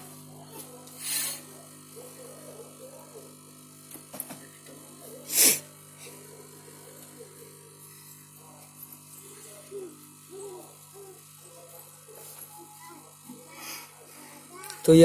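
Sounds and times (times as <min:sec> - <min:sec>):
person sneezing: 0:05.3 - 0:05.7.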